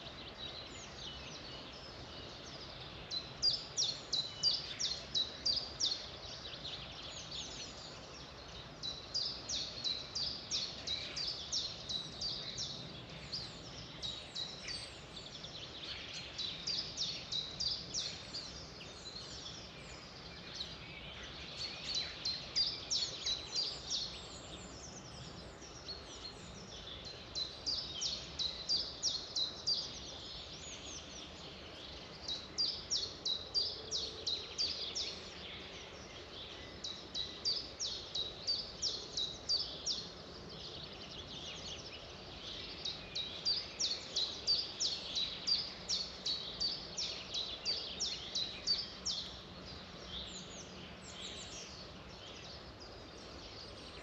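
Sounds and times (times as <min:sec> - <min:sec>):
background hiss: 0:00.0 - 0:54.0
songbirds chirping: 0:00.0 - 0:54.0.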